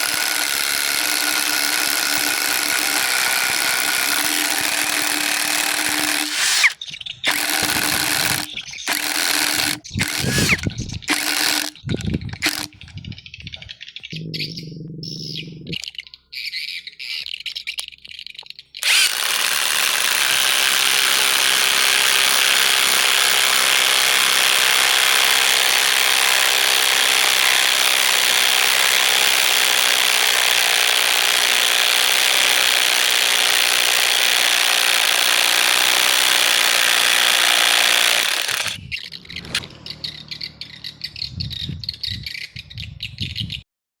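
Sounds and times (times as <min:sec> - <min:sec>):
impact driver running: 0:00.0 - 0:11.8, 0:12.4 - 0:12.8, 0:18.8 - 0:38.8.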